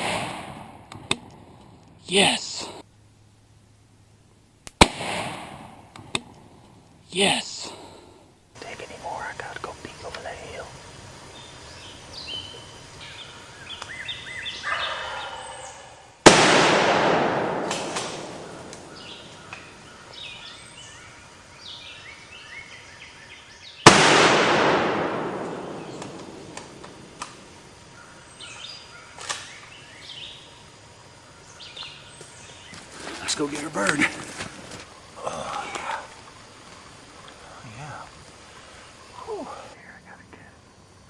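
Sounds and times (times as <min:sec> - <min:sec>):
shotgun blasts: 0:00.0 - 0:01.2, 0:04.8 - 0:06.3, 0:16.2 - 0:19.2, 0:23.8 - 0:27.5
short bird calls: 0:11.4 - 0:16.2
wild turkey gobbling: 0:13.8 - 0:16.1.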